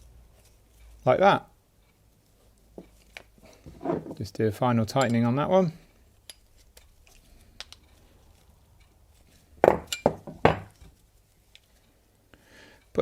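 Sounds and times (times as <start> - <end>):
hand tool clinking on metal: 4.9 - 5.4, 9.7 - 10.9.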